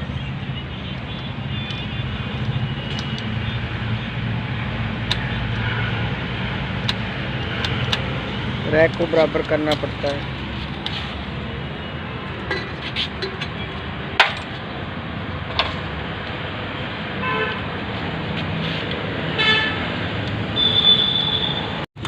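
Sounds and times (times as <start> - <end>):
road traffic noise: 0.0 - 22.0
vehicle horn tooting: 19.4 - 19.8, 20.6 - 21.8.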